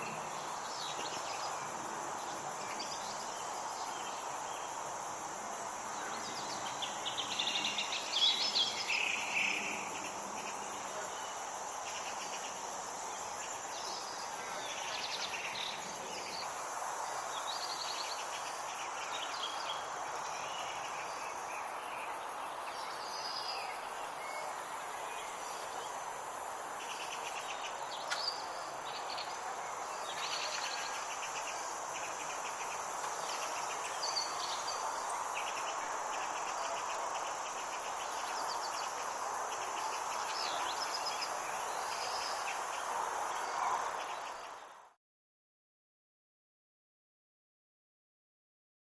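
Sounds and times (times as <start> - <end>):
crickets and insects chirping: 0.0 - 45.0
high-pitched insect buzz: 19.7 - 44.7.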